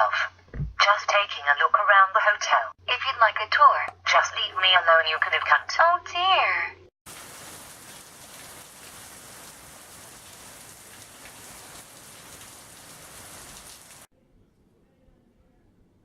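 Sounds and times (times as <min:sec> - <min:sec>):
steady rain hiss: 0:07.0 - 0:14.1.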